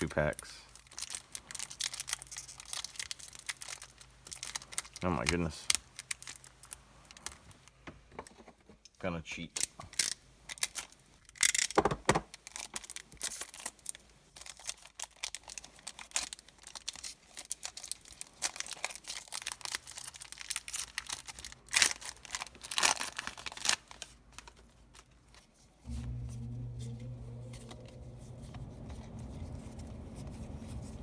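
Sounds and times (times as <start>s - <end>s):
foil wrapper crinkling and tearing: 0.0s - 7.7s, 9.6s - 26.2s.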